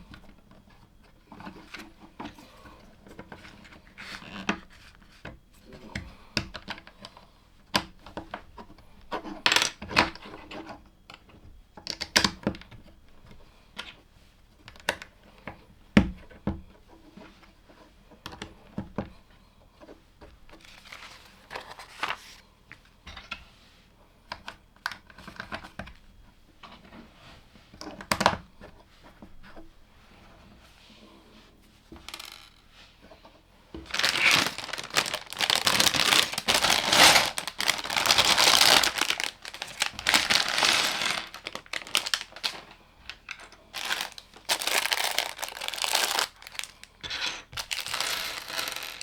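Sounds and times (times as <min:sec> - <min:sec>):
plastic pieces clicking and rattling: 0:32.0 - 0:32.6, 0:33.9 - 0:49.0.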